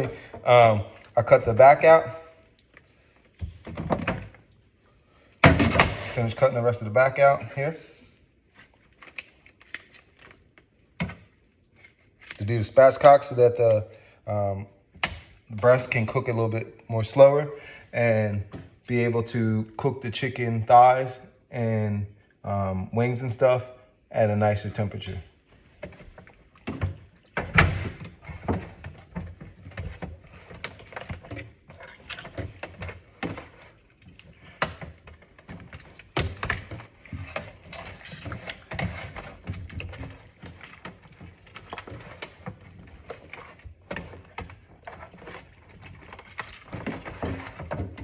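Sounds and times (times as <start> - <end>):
clicks and knocks of handling: 8.5 - 12.4.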